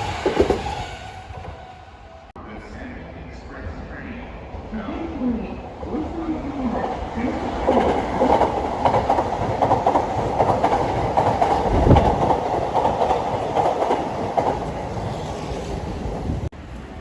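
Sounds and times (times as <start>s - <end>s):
train wheels clattering on rails: 7.4s - 16.9s.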